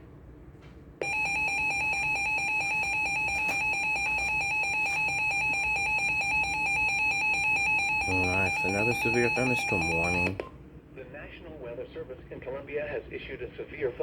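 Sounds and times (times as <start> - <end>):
piercing electronic alert tone: 1.0 - 10.4.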